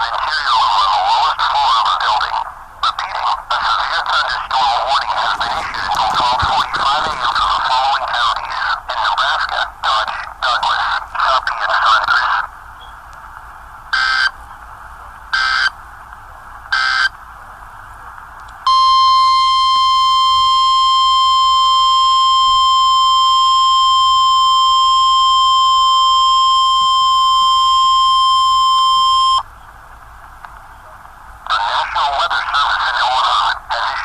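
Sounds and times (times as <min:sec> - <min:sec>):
faint radio hiss: 0:00.0 - 0:34.0
digital data bursts: 0:03.0 - 0:08.8
steady high attention tone: 0:18.7 - 0:29.5.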